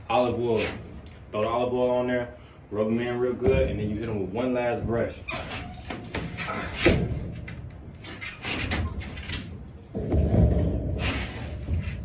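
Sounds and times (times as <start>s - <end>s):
handling bumps and thumps: 3.4s - 12.0s.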